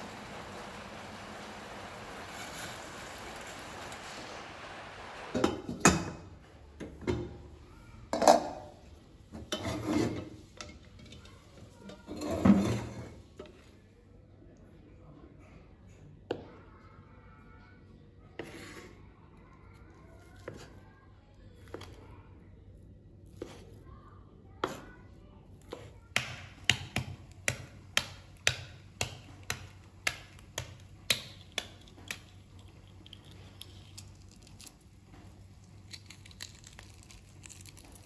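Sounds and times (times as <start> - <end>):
cookware clattering: 8.1 - 8.7.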